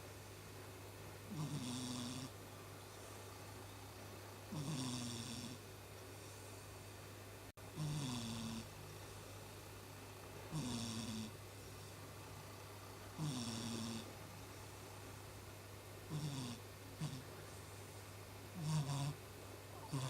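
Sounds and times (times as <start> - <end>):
steady low hum: 0.0 - 20.0
cat snoring: 1.3 - 2.3, 4.5 - 5.6, 7.7 - 8.7, 10.5 - 11.9, 13.2 - 14.1, 16.1 - 17.3, 18.5 - 19.2.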